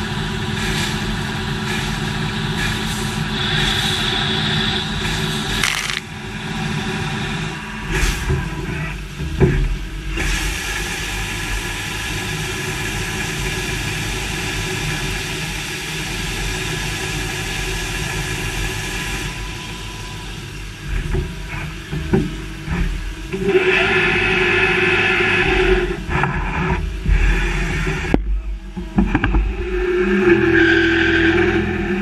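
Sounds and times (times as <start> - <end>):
machinery humming and whining: 0.0 - 32.0
hiss: 0.4 - 5.6.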